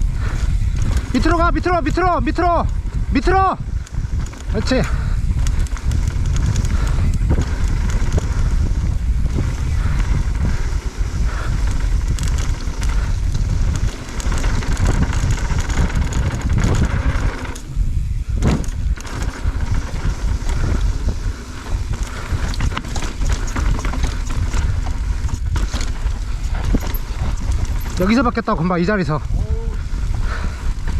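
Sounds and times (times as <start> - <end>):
bike tyre noise: 0.0 - 30.9
wind buffeting microphone: 0.0 - 30.9
bike rattling knocks: 0.5 - 17.7, 18.3 - 28.5.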